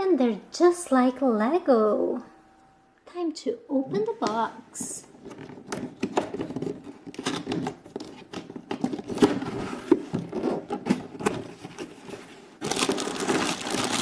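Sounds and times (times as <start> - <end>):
plastic bag crinkling: 10.3 - 14.0.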